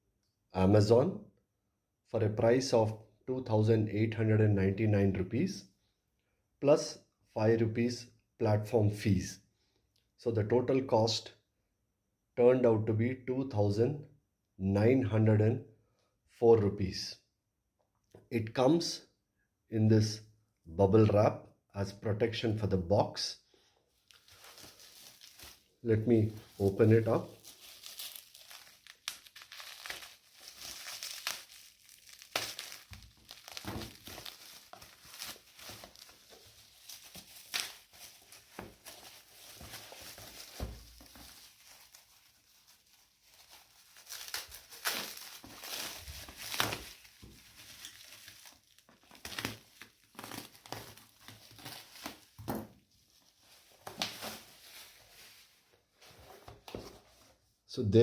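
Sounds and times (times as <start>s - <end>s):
bubble wrap crinkling and tearing: 23.9s - 56.8s.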